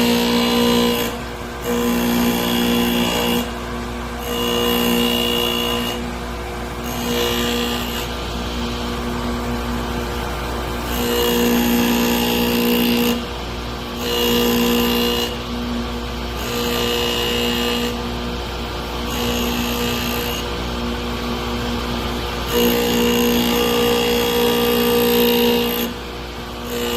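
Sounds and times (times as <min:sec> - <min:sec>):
grinder motor hum: 0:00.0 - 0:26.9
drill bit grinding on wheel: 0:04.2 - 0:06.0, 0:06.9 - 0:08.1, 0:10.9 - 0:13.2, 0:14.0 - 0:15.4, 0:16.4 - 0:18.0, 0:19.1 - 0:20.5, 0:22.5 - 0:25.9, 0:26.6 - 0:26.9.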